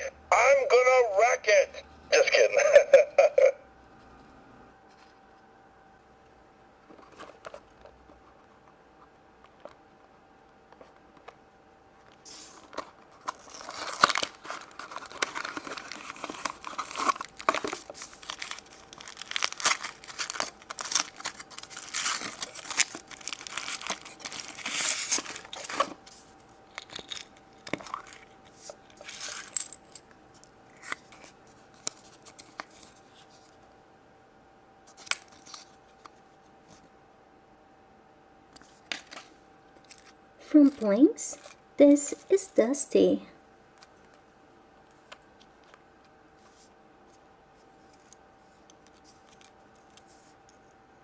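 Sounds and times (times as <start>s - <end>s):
wrapper tearing and crinkling: 12.3s - 29.8s.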